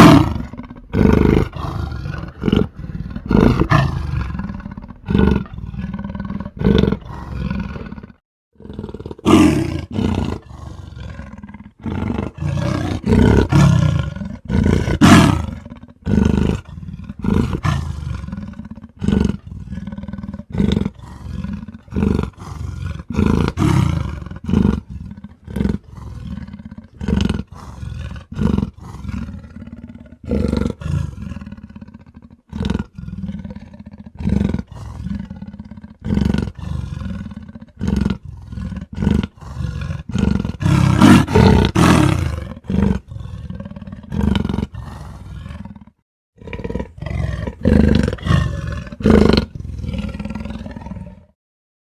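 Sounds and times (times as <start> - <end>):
wolf growling and snarling: 0.0 - 51.4.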